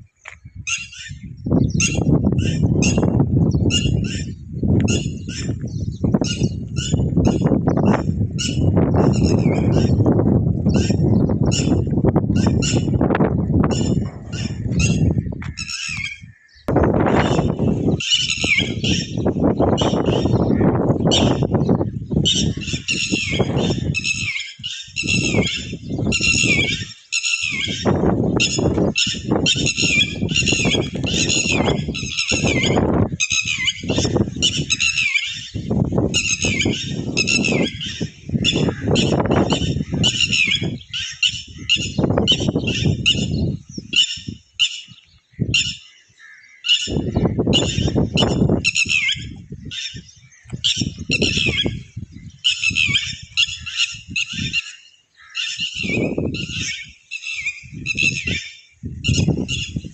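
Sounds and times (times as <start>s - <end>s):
bird chirping: 0.2s - 59.9s
low rumbling noise: 1.2s - 15.8s.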